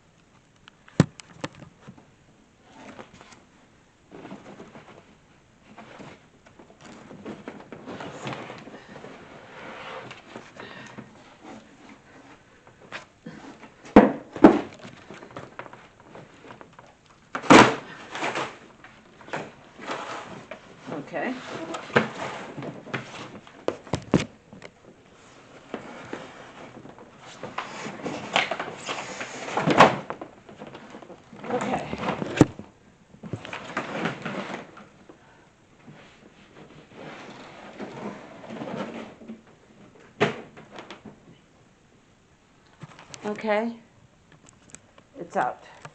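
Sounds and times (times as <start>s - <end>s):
cardboard rustling and scraping: 2.6s - 3.5s, 4.1s - 35.0s, 35.8s - 41.2s
knocks and scrapes: 19.2s - 24.2s.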